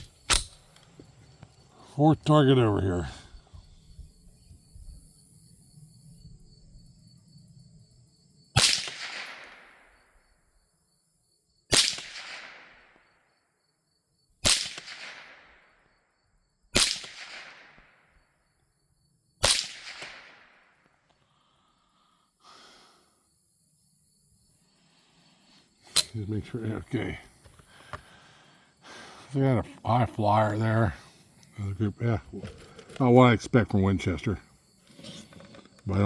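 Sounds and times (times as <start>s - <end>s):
rifle gunshots with echo: 8.6s - 9.9s, 11.7s - 13.0s, 14.4s - 15.6s, 16.8s - 18.0s, 19.4s - 20.8s.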